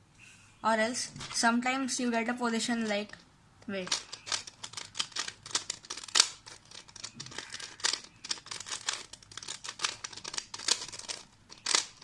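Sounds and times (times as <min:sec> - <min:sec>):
puzzle cube clicking and scraping: 0:02.7 - 0:12.0.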